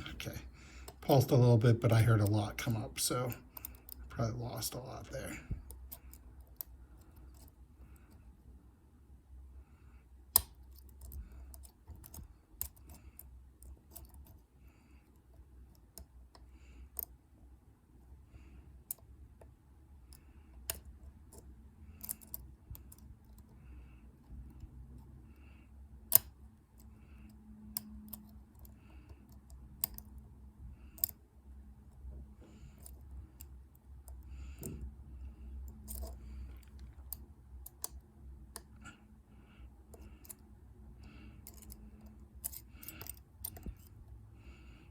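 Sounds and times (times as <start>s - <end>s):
lock pick clicking in lock: 10.3s - 14.4s, 20.1s - 23.5s, 26.1s - 26.9s, 27.7s - 30.2s, 31.0s - 31.2s, 35.6s - 38.8s, 41.4s - 43.9s.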